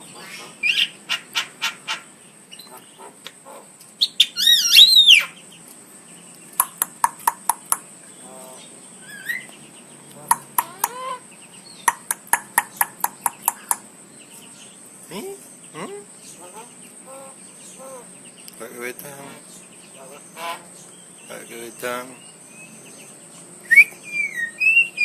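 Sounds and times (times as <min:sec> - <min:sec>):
bird sharp repeated notes: 0:06.6 - 0:07.9, 0:10.2 - 0:11.0, 0:11.8 - 0:13.8.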